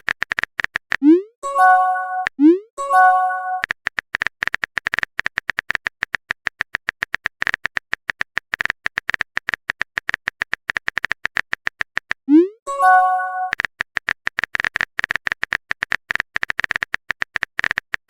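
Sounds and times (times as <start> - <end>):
fast short clicks: 0.0 - 1.1, 3.6 - 12.3, 13.5 - 18.0
bright multi-note chime: 1.4 - 3.6, 12.7 - 13.5.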